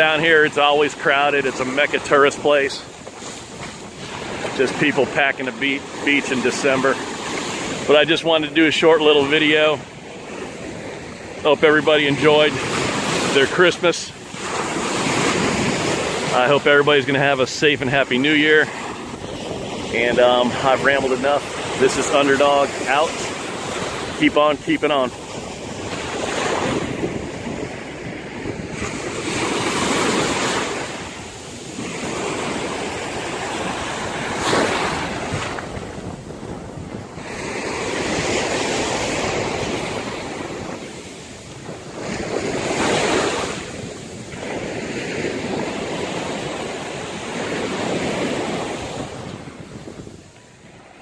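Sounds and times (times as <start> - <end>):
surf breaking on a beach: 0.0 - 51.0
wind buffeting microphone: 0.0 - 51.0.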